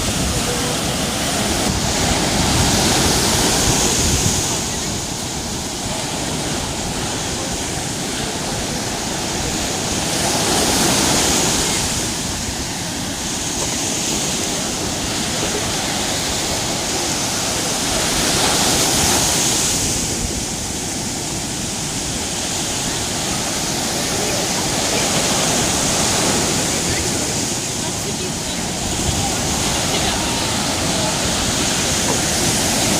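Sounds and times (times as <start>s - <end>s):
waves breaking: 0.0s - 32.9s.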